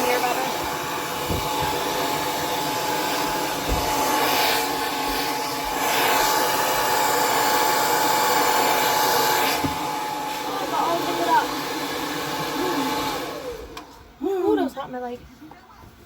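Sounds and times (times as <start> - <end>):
hair dryer whine: 0.0 - 14.2.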